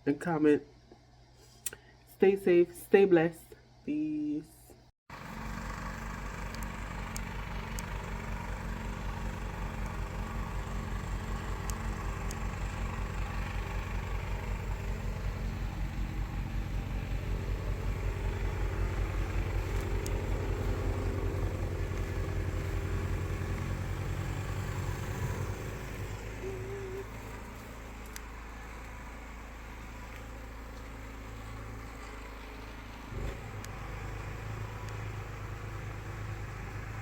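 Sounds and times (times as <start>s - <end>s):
vehicle engine running: 5.1s - 37.0s.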